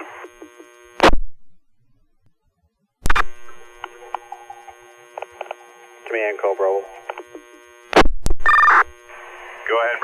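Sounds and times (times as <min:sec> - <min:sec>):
radio squelch noise: 0:00.0 - 0:01.2, 0:03.0 - 0:10.0
radio channel hum: 0:00.0 - 0:01.5, 0:03.0 - 0:10.0
radio key-up click: 0:03.0 - 0:04.3, 0:05.1 - 0:06.2, 0:07.0 - 0:08.9.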